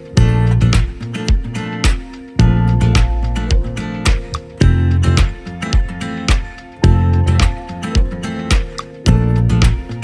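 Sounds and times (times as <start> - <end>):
acoustic guitar strumming: 0.0 - 10.0
steady beat: 0.0 - 10.0
bass line: 0.1 - 1.5, 2.4 - 6.0, 6.8 - 8.1, 9.1 - 10.0.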